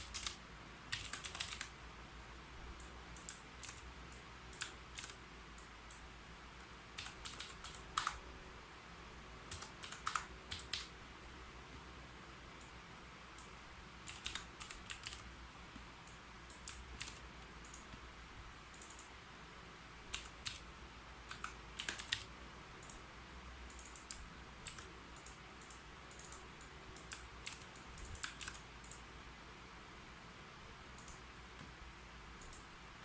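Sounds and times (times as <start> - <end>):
typing on computer keyboard: 0.0 - 1.8, 2.8 - 5.2, 7.0 - 8.2, 9.5 - 10.9, 13.4 - 15.3, 16.1 - 17.9, 18.8 - 19.1, 20.1 - 23.0, 23.7 - 29.0.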